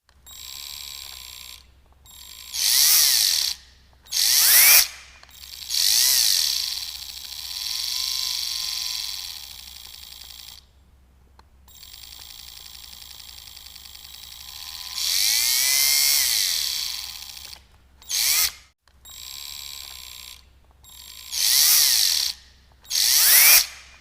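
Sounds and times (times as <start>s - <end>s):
electric drill bursts: 0.3s - 10.6s, 11.7s - 24.0s.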